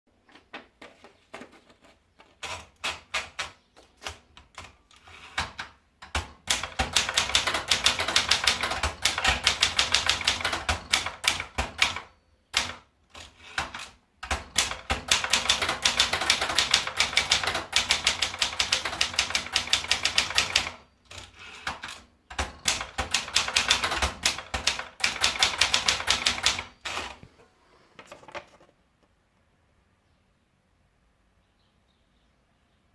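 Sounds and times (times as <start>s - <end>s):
typewriter typing: 2.3s - 27.3s.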